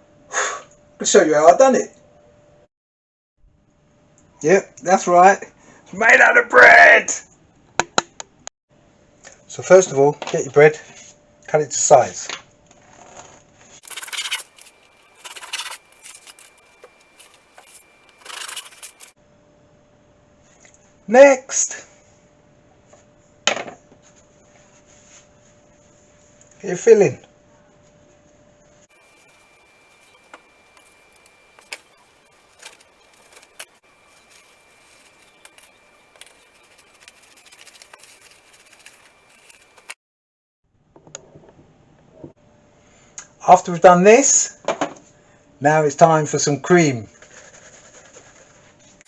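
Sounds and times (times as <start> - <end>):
knife rasping through bread: 13.8 - 19.1, 28.9 - 40.0.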